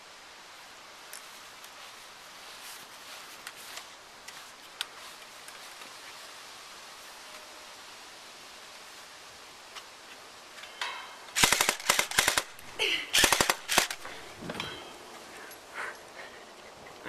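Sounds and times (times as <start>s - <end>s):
airsoft gun shots: 11.4s - 12.5s, 13.2s - 14.0s.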